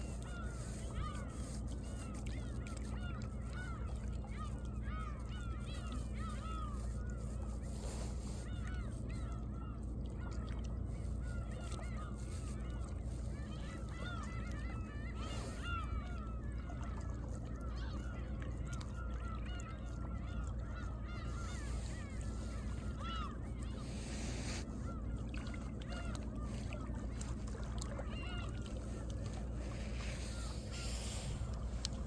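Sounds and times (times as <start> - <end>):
waves lapping among rocks: 0.0 - 32.0
flock of birds honking: 17.6 - 32.0.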